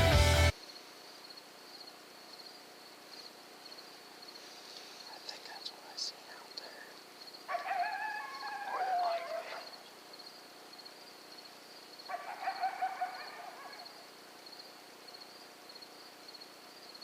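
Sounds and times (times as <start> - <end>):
insects chirping: 0.5 - 17.0
coyote howling: 7.5 - 9.8, 12.1 - 14.1.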